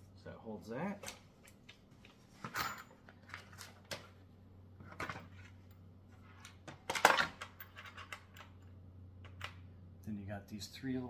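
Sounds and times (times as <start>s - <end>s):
parts clicking and knocking: 4.8s - 9.7s.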